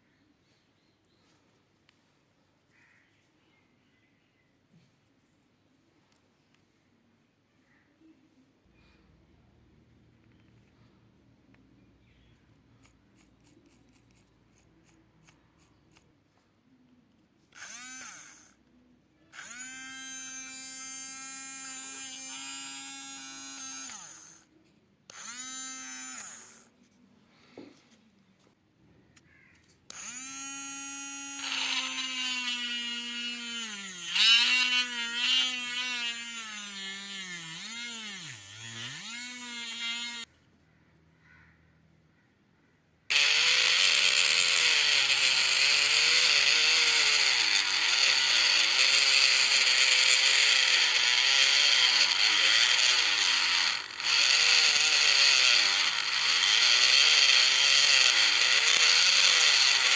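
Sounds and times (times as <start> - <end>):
mini drill whining: 17.4 - 18.7, 19.3 - 24.5, 25.1 - 26.8, 29.9 - 40.3, 43.1 - 59.9.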